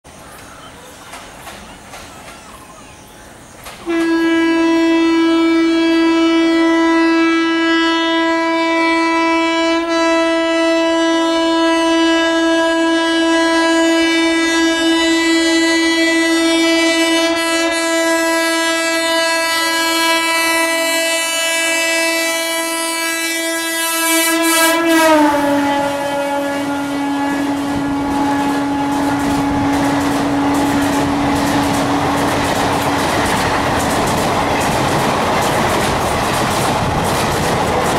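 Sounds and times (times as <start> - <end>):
train coaches clattering past: 0.1 - 37.9
locomotive horn blast: 3.8 - 33.7.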